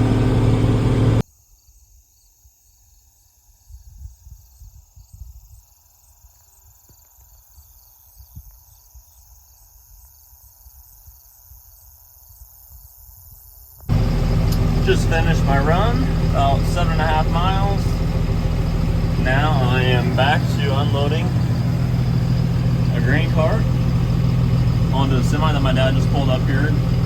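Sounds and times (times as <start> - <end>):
farm machine engine drone: 0.0 - 1.2, 13.9 - 27.0
crickets chirping: 1.3 - 27.0.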